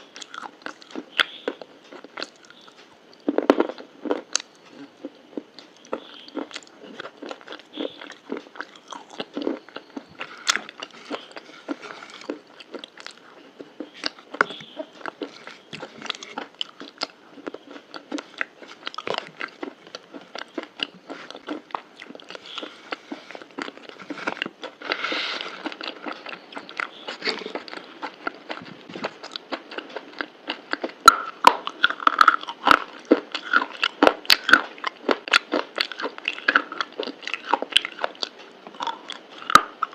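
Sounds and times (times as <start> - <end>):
person chewing crunchy food: 0.0 - 39.9.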